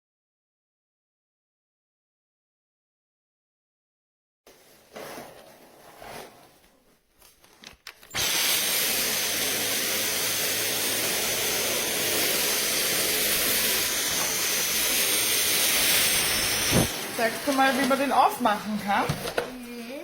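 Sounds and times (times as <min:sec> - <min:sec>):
vacuum cleaner running: 0:08.2 - 0:19.6.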